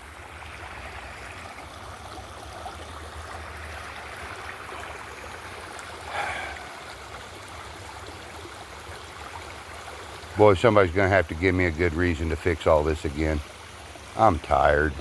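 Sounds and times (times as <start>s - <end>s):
floodwater rushing and gurgling: 0.0s - 15.0s.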